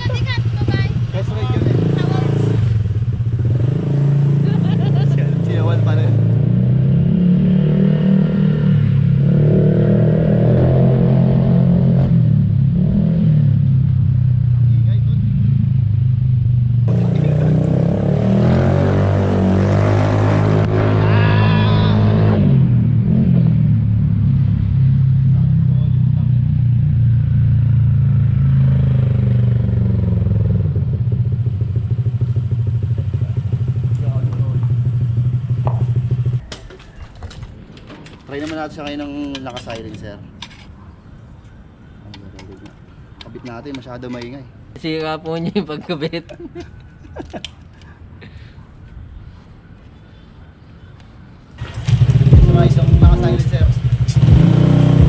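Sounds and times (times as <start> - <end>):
scooter engine running: 0.0 - 3.6, 51.6 - 55.0.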